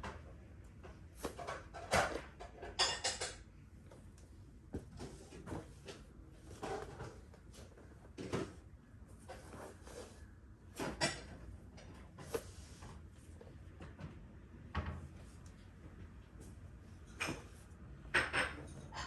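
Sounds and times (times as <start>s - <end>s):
clothing rustling: 9.1s - 11.0s.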